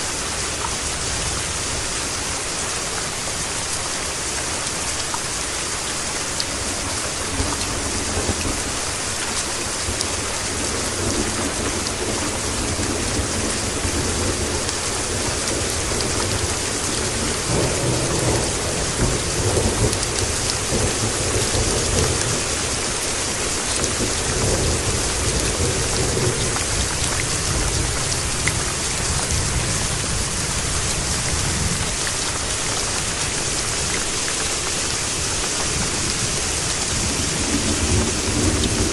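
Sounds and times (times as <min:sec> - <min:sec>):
rain hissing: 0:00.0 - 0:38.9
low roll of thunder: 0:35.6 - 0:38.9.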